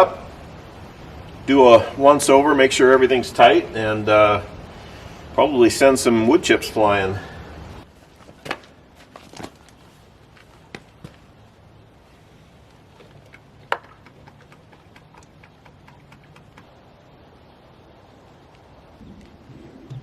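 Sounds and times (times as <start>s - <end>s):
sharp clicks and knocks: 13.0s - 16.8s.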